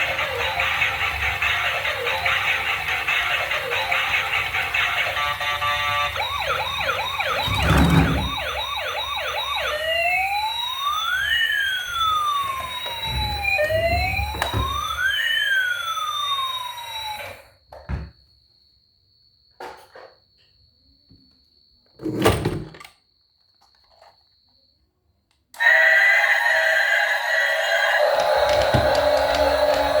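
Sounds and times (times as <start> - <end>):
electronic toy siren: 0.0 - 17.6, 25.5 - 30.0.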